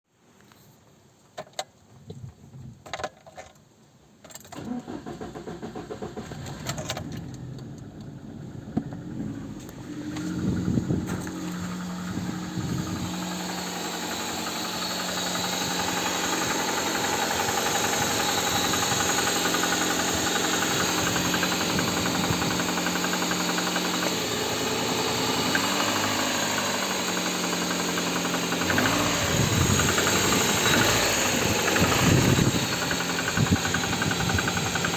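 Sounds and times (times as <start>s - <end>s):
car engine starting and idling: 4.5s - 34.9s
engine knocking: 10.2s - 34.9s.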